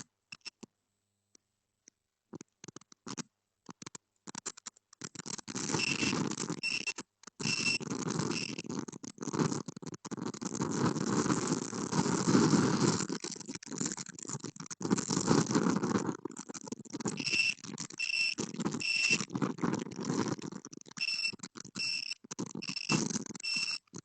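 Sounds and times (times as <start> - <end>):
reversing alarm beeps: 17.2 - 19.2, 21.0 - 23.8.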